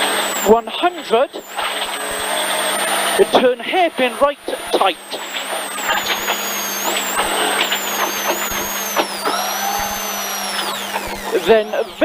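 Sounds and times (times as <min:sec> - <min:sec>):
car engine revving: 0:00.0 - 0:12.0
steady low hum: 0:00.0 - 0:12.0
knocks and ticks: 0:04.4 - 0:11.4.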